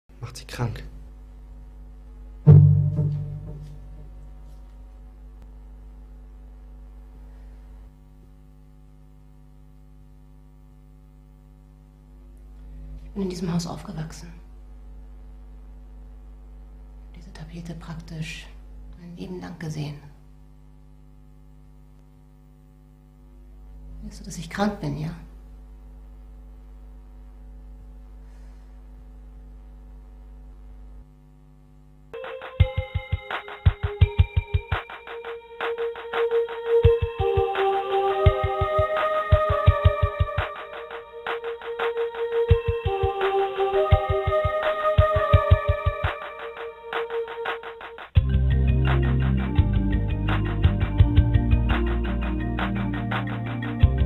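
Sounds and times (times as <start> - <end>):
steady low hum: 0.1 - 47.5, 48.2 - 54.0
electronic synthesizer music: 2.5 - 4.1, 32.2 - 47.0
loud hit: 2.5 - 4.1.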